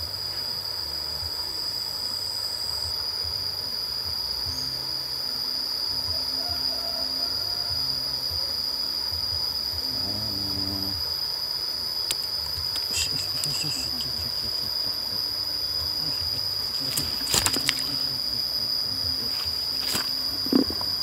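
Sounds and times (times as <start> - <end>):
insects trilling: 0.0 - 21.0
sharp clicks: 16.8 - 18.1.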